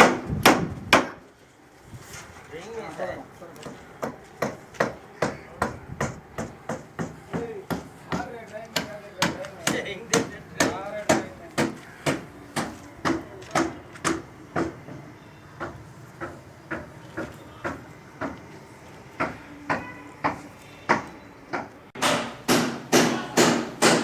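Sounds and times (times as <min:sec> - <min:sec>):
hammer blows: 0:19.2 - 0:24.0.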